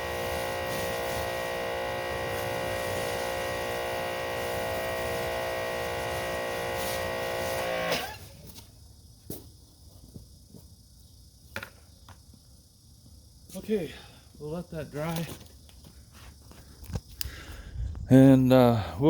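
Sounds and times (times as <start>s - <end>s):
water spraying hiss: 0.0s - 8.2s
pressure washer motor whining: 0.0s - 8.3s.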